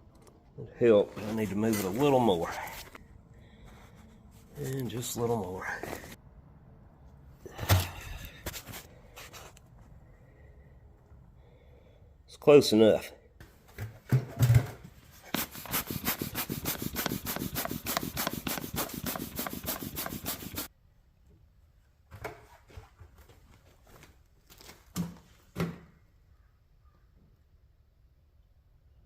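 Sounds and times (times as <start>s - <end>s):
rapid scraping strokes: 15.2s - 20.7s.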